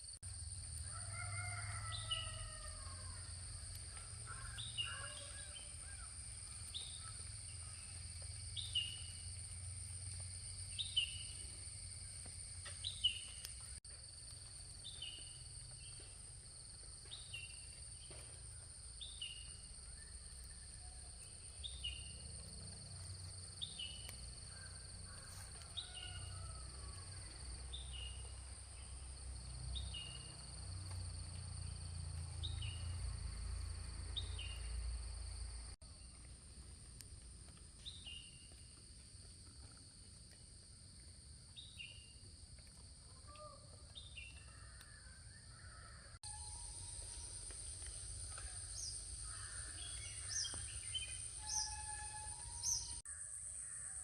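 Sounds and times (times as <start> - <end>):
high-pitched insect drone: 46.2 - 54.0
bird call: 48.3 - 53.0.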